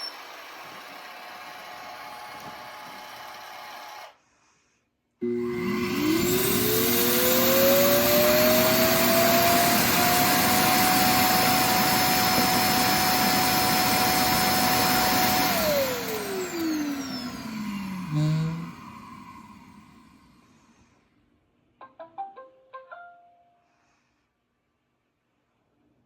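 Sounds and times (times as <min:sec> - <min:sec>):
vacuum motor whine: 0:00.0 - 0:04.1, 0:05.2 - 0:20.8.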